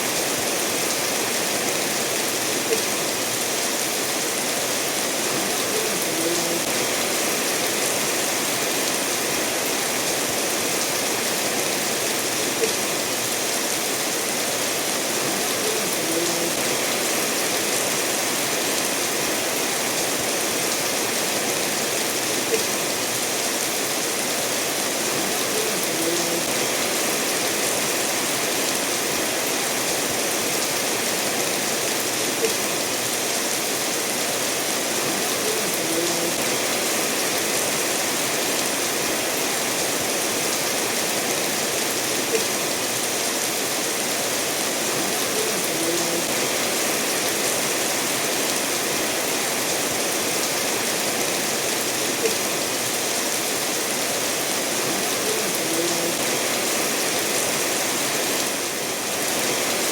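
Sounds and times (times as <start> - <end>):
steady rainfall: 0.0 - 59.9
stream running over stones: 0.0 - 59.9.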